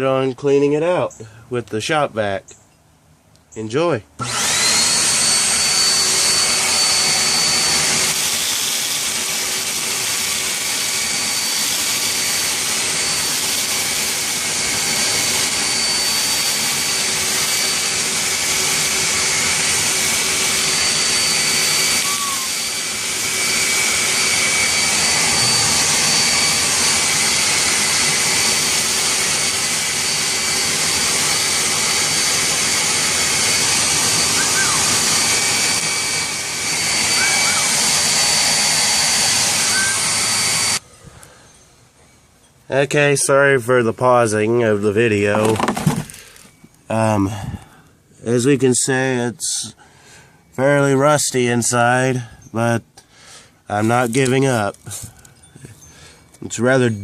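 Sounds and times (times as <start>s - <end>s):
shop vacuum whining: 4.2s - 41.4s, 45.0s - 47.7s.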